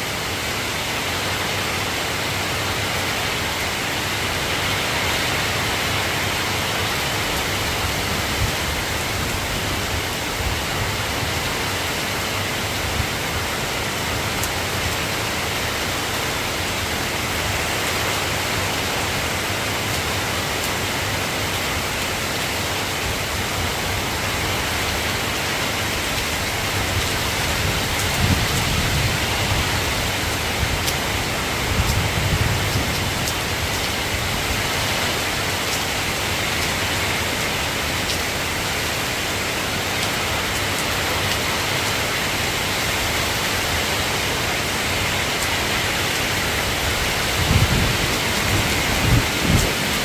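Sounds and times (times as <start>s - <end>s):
steady rain falling: 0.0s - 50.0s
thunder rumbling: 47.0s - 50.0s.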